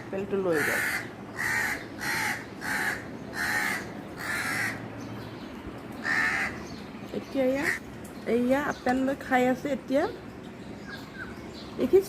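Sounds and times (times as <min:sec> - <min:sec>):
crow cawing: 0:00.5 - 0:04.9, 0:06.0 - 0:06.7, 0:07.6 - 0:07.8.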